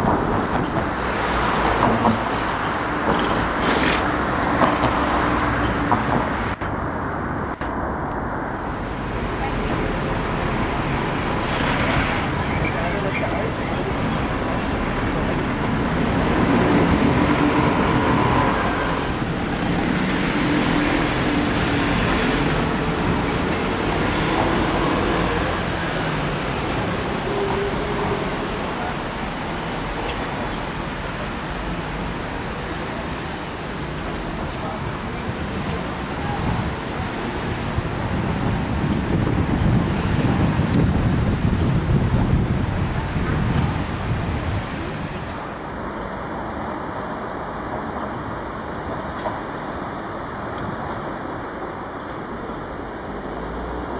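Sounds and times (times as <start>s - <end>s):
road traffic rushing: 0.0s - 53.9s
vehicles passing on street: 0.0s - 53.9s
wind buffeting microphone: 34.2s - 45.5s.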